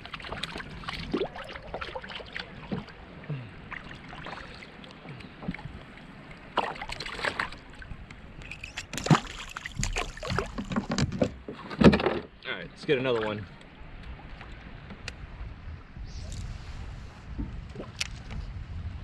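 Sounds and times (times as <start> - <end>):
small water sounds: 0.0 - 18.4
light knocks and clicks on kayak: 4.9 - 12.4, 13.6 - 15.2.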